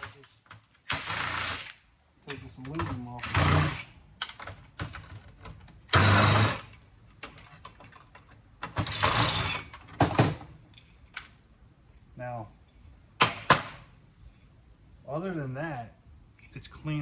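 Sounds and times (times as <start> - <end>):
metal parts clicking and knocking: 6.7 - 11.4.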